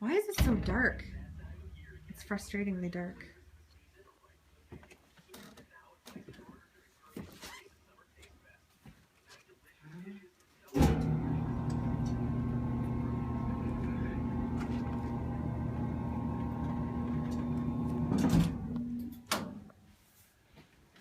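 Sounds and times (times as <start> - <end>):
elevator motor hum: 10.8 - 19.1.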